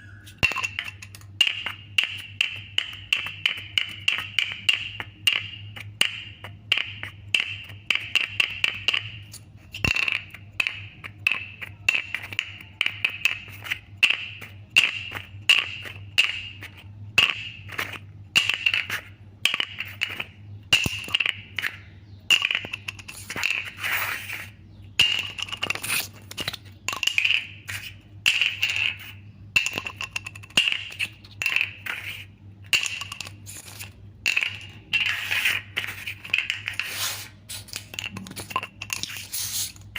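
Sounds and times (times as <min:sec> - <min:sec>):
bottle cap clicking and rattling: 0:09.8 - 0:13.4, 0:25.0 - 0:29.0, 0:29.6 - 0:32.1, 0:32.7 - 0:35.2, 0:37.5 - 0:39.9.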